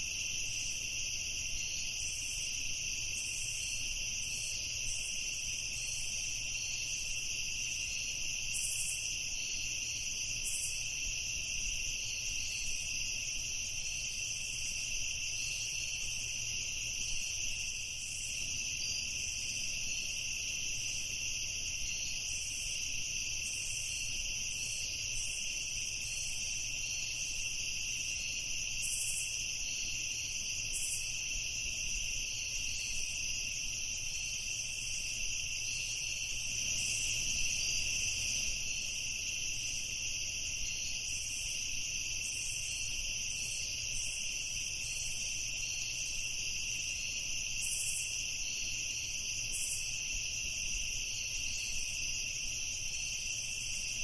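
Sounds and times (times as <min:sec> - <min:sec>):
night insects chirring: 0:00.0 - 0:54.0.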